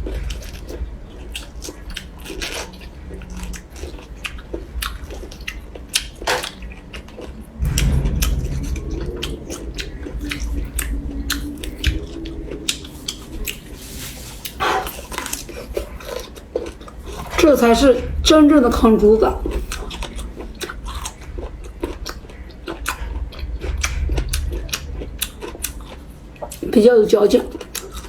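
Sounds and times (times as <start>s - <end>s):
low rumble: 0.0s - 5.4s, 7.0s - 26.6s.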